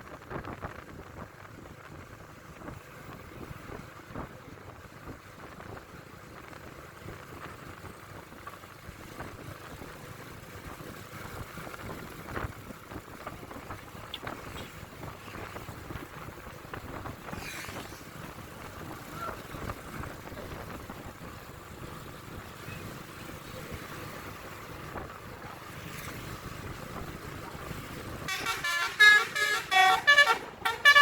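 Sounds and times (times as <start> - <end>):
vehicle and road noise: 0.0 - 31.0
wind on microphone: 10.7 - 21.6.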